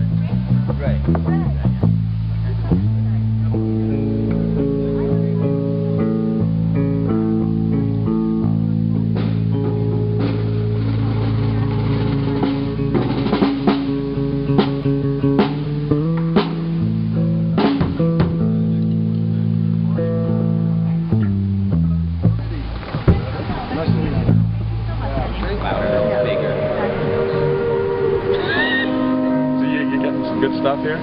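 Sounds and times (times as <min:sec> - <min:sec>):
guitar and bass chords: 0:00.0 - 0:31.0
drum hits: 0:09.2 - 0:16.9, 0:17.6 - 0:18.5.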